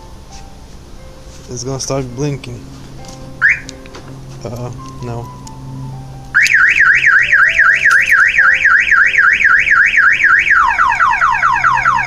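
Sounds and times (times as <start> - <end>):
car alarm siren: 3.4 - 3.7, 6.4 - 12.0.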